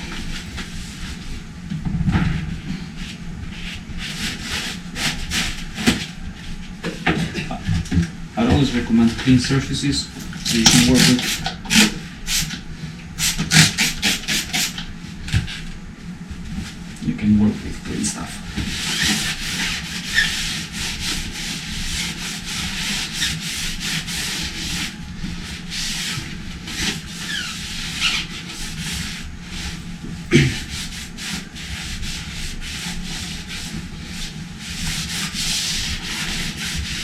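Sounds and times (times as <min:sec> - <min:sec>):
scrubbing a motorcycle wheel: 0:18.5 - 0:29.8.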